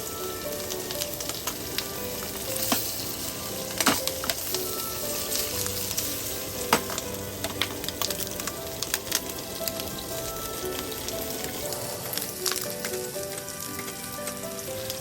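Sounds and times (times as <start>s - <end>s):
meat sizzling on a griddle: 0.0s - 15.0s
fat popping: 6.7s - 8.6s.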